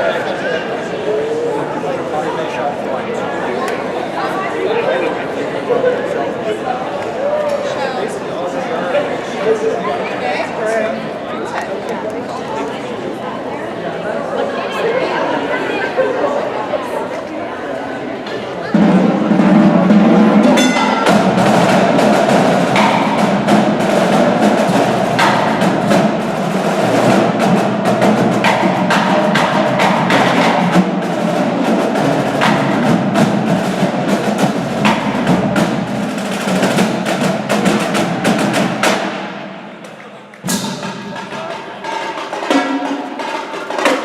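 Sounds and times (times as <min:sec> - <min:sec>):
wooden and drum percussion: 0:18.7 - 0:44.0.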